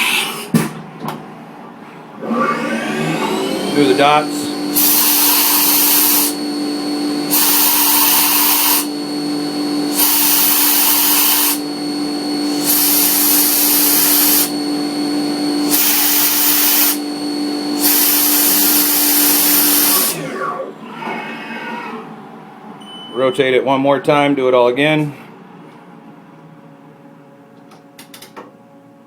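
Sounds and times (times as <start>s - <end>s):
mill spindle humming: 0.2s - 22.9s
air blast hissing: 3.8s - 6.4s, 7.2s - 9.0s, 9.9s - 11.7s, 12.4s - 14.6s, 15.6s - 17.1s, 17.7s - 20.2s.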